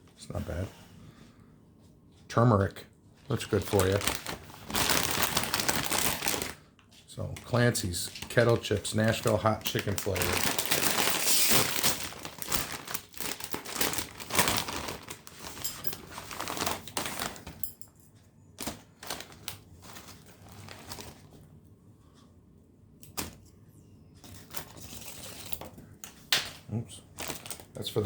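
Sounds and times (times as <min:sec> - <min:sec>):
chip bag crinkling and rustling: 0:03.3 - 0:17.6, 0:18.6 - 0:21.4, 0:26.4 - 0:28.0.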